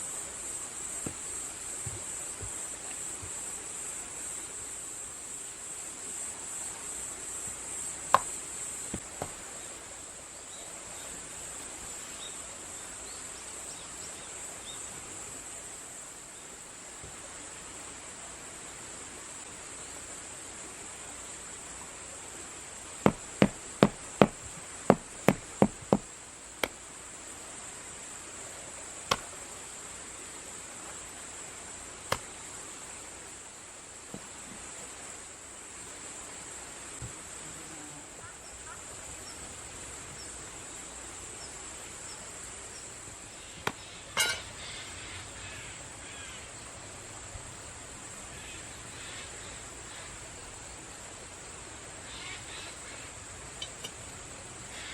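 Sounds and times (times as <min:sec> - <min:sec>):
high-pitched hiss: 0:00.0 - 0:54.9
insects droning and chirping: 0:00.0 - 0:54.9
sharp knocks: 0:23.1 - 0:26.8
sharp ringing clinks: 0:44.2 - 0:44.6.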